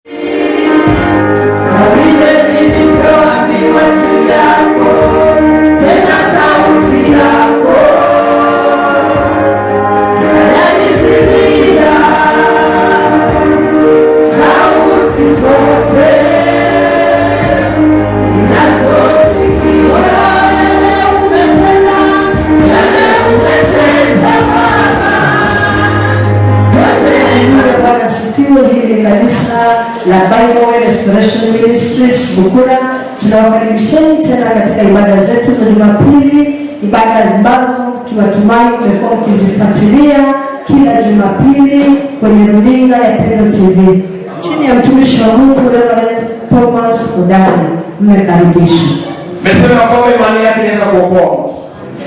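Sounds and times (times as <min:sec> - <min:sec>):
gospel choir singing: 0:00.0 - 0:33.6, 0:44.0 - 0:45.8, 0:48.6 - 0:52.0
bass line: 0:00.4 - 0:29.6.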